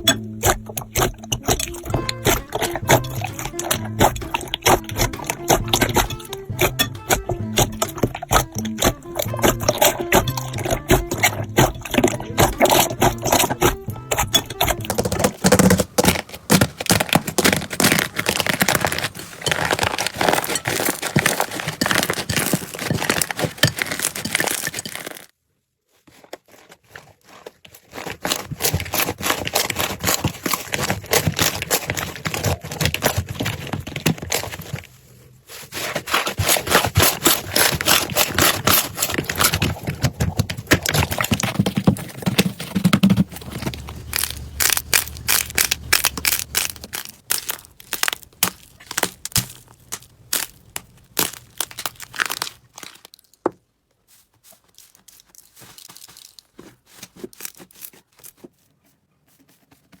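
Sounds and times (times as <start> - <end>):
slime squished crackling and popping: 0.0 - 25.3, 36.1 - 41.7, 43.2 - 53.4.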